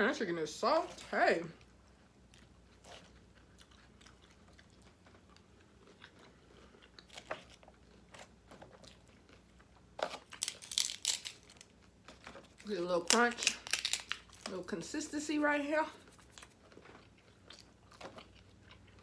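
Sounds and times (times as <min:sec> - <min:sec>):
chewing food: 0:00.9 - 0:14.5, 0:16.0 - 0:19.0
crunchy bites: 0:06.9 - 0:14.5.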